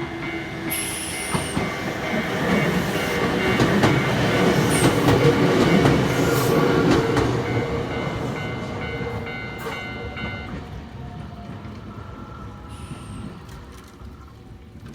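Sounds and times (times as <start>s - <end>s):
train wheels rumbling on rails: 0.0s - 14.5s.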